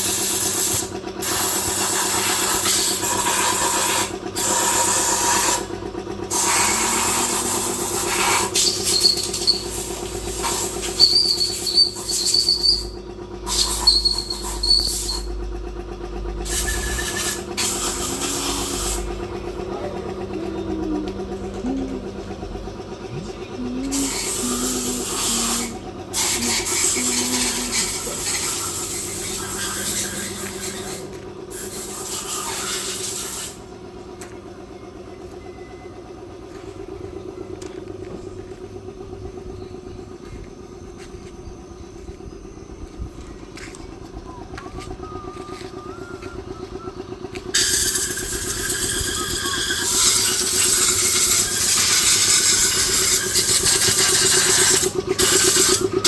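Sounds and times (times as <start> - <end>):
diesel engine running: 0.0 - 56.0.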